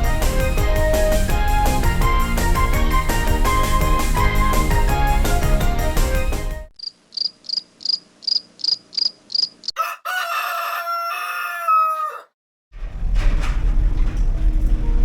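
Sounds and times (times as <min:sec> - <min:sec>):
background music: 0:00.0 - 0:06.7
cricket chirping: 0:06.8 - 0:09.8
rooster crowing: 0:09.6 - 0:12.4.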